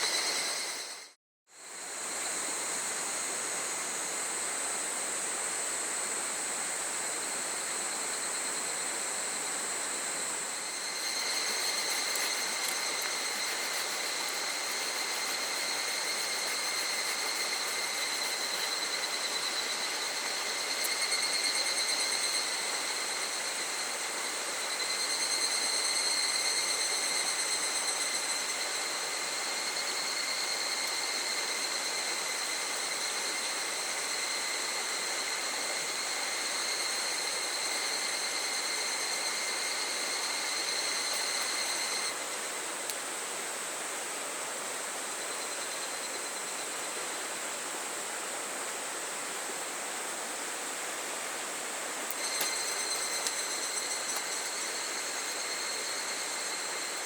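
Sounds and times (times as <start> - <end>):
cicadas chorus ringing: 0.0 - 42.8, 44.8 - 47.5, 50.7 - 57.0
small stream rushing: 46.4 - 57.0.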